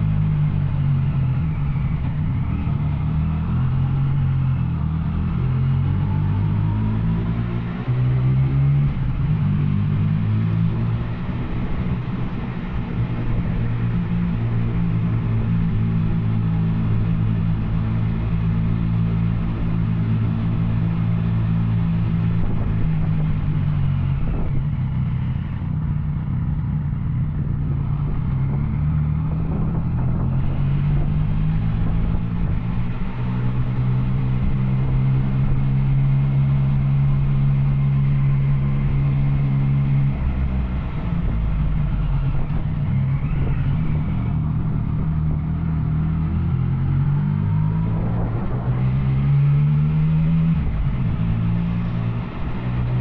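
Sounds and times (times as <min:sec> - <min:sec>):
motorcycle engine: 0:00.0 - 0:53.0.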